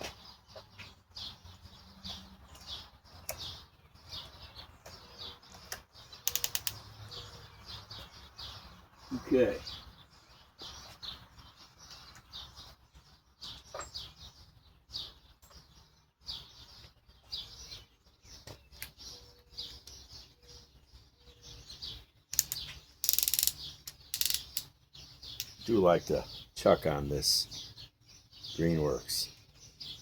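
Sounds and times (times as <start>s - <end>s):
birds chirping: 0.0s - 30.0s
drill chuck ratcheting clicks: 6.2s - 6.8s, 22.3s - 24.7s.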